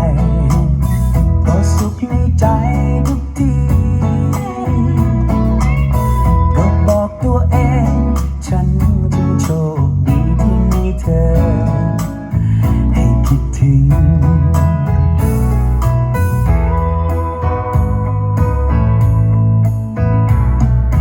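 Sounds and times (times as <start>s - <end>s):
person singing: 0.0s - 15.4s
guitar and bass music: 0.0s - 21.0s.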